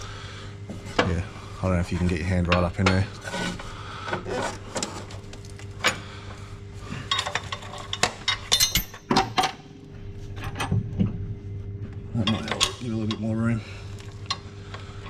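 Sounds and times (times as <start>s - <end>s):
low hum: 0.0s - 15.0s
metal hardware clinking: 7.1s - 9.6s.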